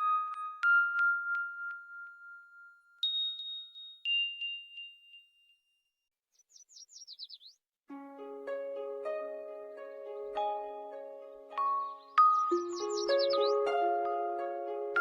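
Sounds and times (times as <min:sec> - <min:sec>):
bell-like chime: 0:00.0 - 0:05.9.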